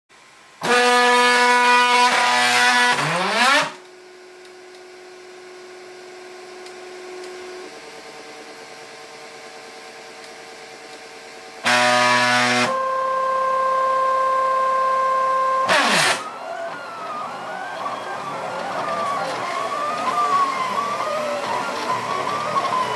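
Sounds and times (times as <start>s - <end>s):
stepper motors whining: 0.6s - 4.8s, 11.6s - 22.9s
printer humming: 11.6s - 22.9s.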